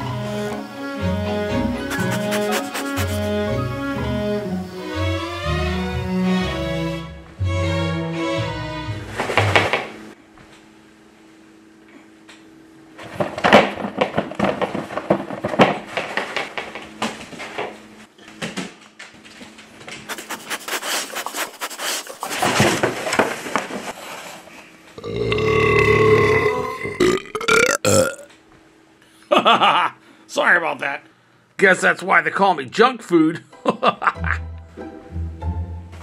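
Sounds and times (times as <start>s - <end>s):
rustling: 1.9s - 3.4s, 20.1s - 24.7s
low drawn-out burp: 25.0s - 28.3s.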